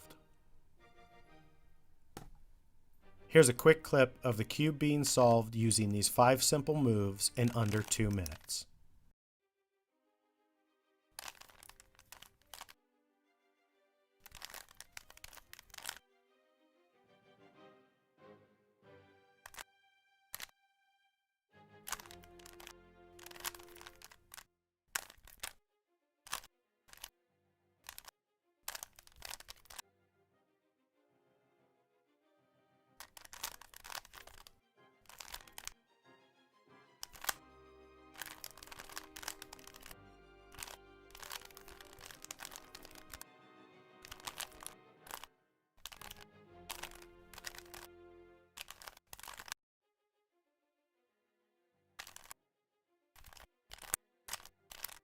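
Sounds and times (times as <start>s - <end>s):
quiet background music: 0.0s - 8.7s, 34.6s - 48.7s
puzzle cube clicking as twisted: 3.4s - 9.0s, 11.2s - 12.8s, 14.2s - 16.0s, 19.4s - 19.6s, 21.9s - 24.4s, 25.0s - 25.6s, 26.3s - 27.1s, 27.8s - 28.1s, 28.7s - 29.8s, 33.0s - 35.8s, 37.0s - 37.4s, 38.1s - 43.3s, 44.0s - 47.9s, 48.6s - 49.6s, 52.0s - 52.4s, 53.2s - 55.0s.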